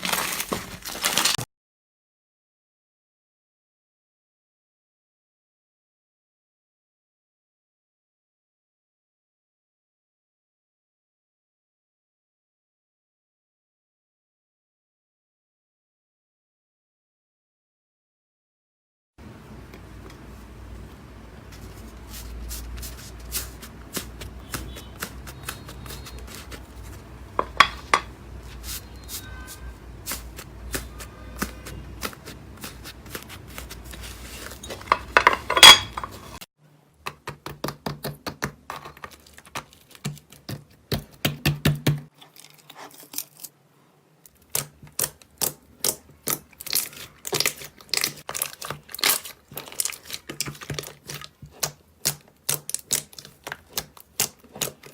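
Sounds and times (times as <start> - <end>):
hands squishing slime: 21.5 - 27.3, 28.4 - 34.8, 44.4 - 54.9.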